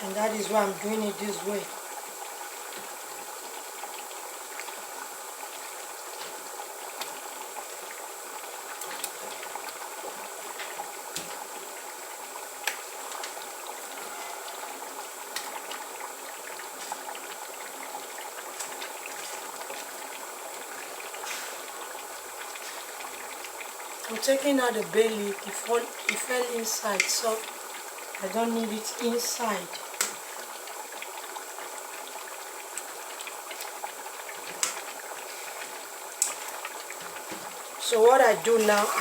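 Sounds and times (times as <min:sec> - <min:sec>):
stew bubbling in a pot: 0:00.0 - 0:39.0
small pops and ticks: 0:07.0 - 0:07.2, 0:12.6 - 0:13.4, 0:15.3 - 0:15.6, 0:26.0 - 0:26.3, 0:26.9 - 0:27.2, 0:30.0 - 0:30.2, 0:34.4 - 0:34.9, 0:36.2 - 0:37.5.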